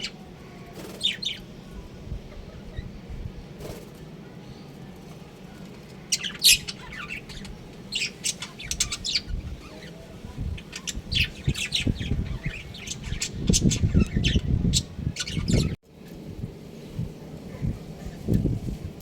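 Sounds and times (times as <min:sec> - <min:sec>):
budgerigars chirping: 0:06.1 - 0:15.8.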